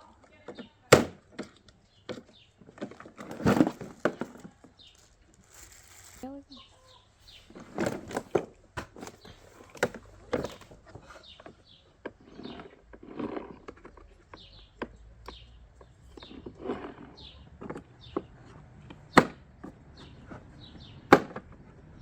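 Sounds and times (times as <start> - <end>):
objects knocking together: 0.9 - 6.2, 7.6 - 10.8
rustling: 2.6 - 14.3.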